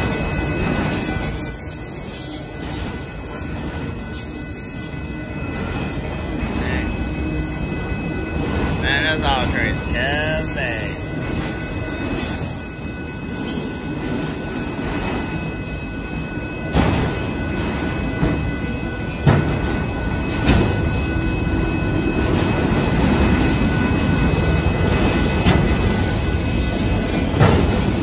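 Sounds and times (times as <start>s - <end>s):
high wheel squeal: 0.0s - 19.2s
train wheels rumbling on rail: 0.0s - 28.0s.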